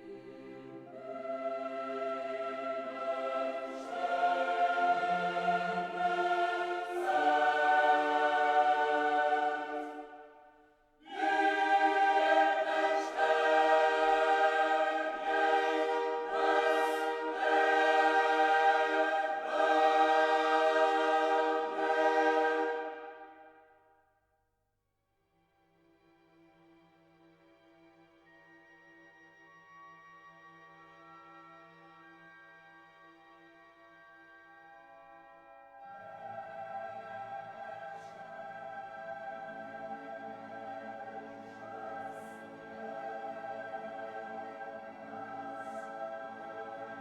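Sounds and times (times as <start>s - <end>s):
slow choir-like chords: 0.0s - 23.8s, 35.4s - 47.0s.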